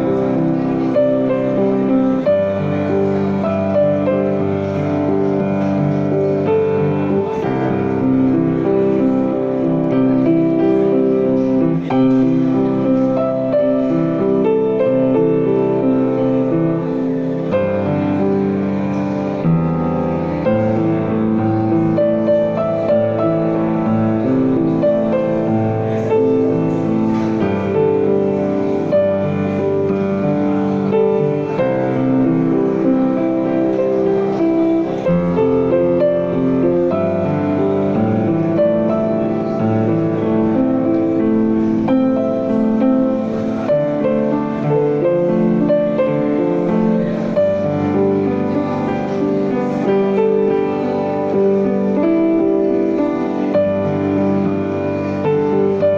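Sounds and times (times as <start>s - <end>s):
slow gentle piano piece: 0.0s - 55.9s.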